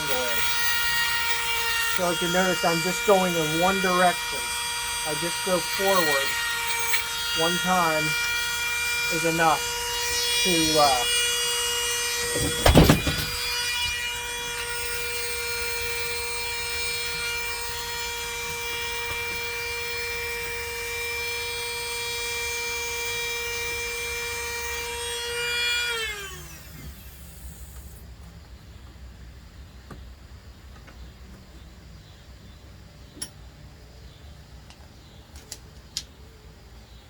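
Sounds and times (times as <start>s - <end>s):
rotary tool spinning down: 0.0s - 28.0s
rotary tool grinding whine: 0.0s - 28.4s.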